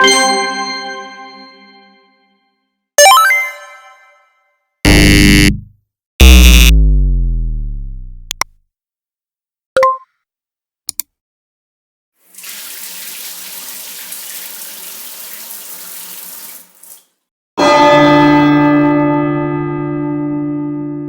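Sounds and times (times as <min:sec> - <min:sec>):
water running from tap: 0:12.2 - 0:17.2.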